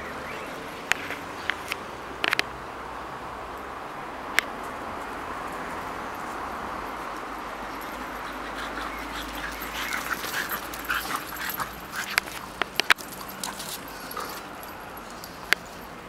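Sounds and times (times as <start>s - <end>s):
dogs whimpering and yipping: 7.7s - 15.4s.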